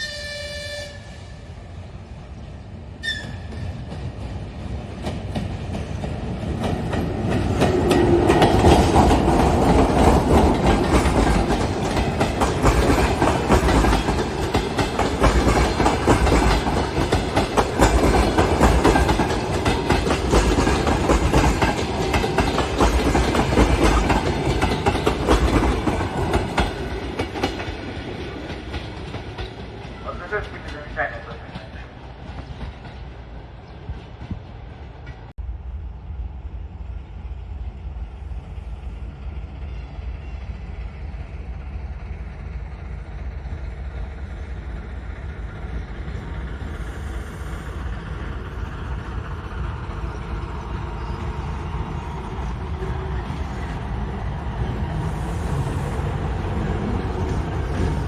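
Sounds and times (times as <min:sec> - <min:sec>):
train horn toot: 0:00.0 - 0:01.6, 0:03.0 - 0:03.7
train wheels clattering over rail joints: 0:03.3 - 0:30.0.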